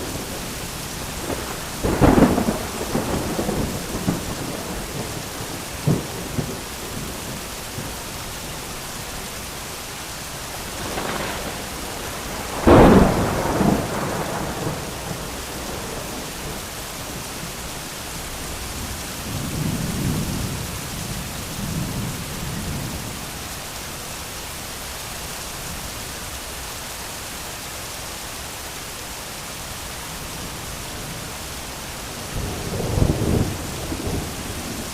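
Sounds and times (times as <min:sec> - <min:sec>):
rumbling thunder: 0:00.0 - 0:08.0, 0:10.5 - 0:23.2, 0:32.2 - 0:34.9
steady rain: 0:00.0 - 0:34.9
loud thunderclap: 0:01.2 - 0:07.9, 0:10.7 - 0:16.8, 0:32.4 - 0:34.9.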